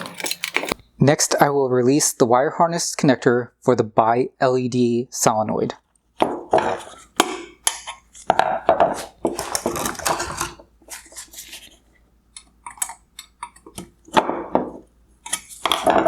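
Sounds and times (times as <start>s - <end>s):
plastic parts clattering: 0.0s - 0.8s, 6.4s - 11.7s, 12.6s - 16.0s.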